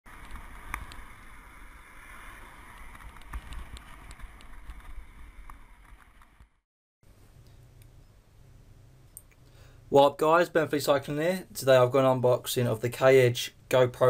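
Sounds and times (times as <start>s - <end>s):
steady rushing noise: 0.1s - 6.6s.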